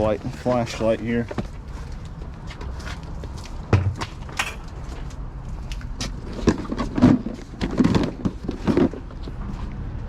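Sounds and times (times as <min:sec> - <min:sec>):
items knocking and clattering: 0:03.6 - 0:05.1, 0:06.0 - 0:09.2.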